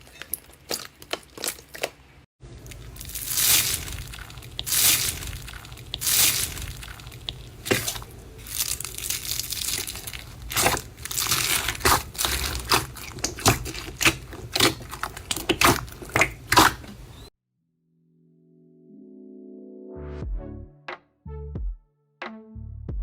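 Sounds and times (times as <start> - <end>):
slime crackling and popping: 2.6 - 17.3.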